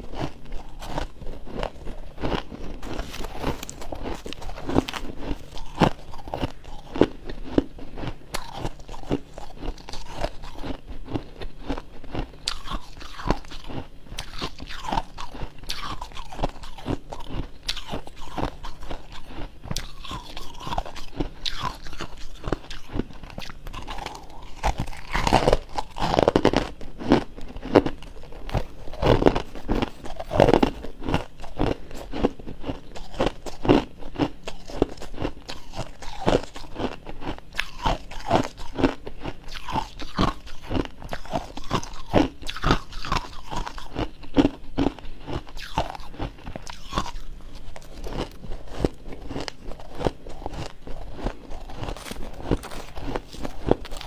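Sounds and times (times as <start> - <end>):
frost being chewed crunching: 0.0 - 54.0.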